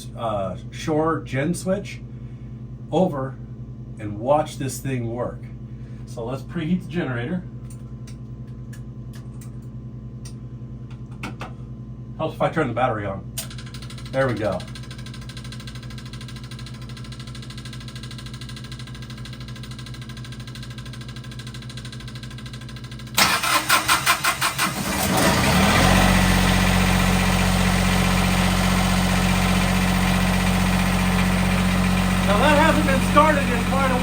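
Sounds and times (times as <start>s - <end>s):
diesel generator idling: 23.2s - 34.0s
diesel generator starter cranking: 23.2s - 34.0s.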